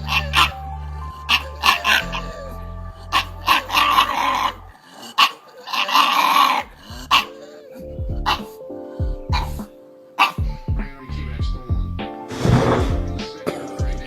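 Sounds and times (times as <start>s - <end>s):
background music: 0.0s - 14.0s
dog barking: 0.1s - 0.6s, 1.3s - 2.3s, 3.1s - 7.7s, 10.2s - 10.5s.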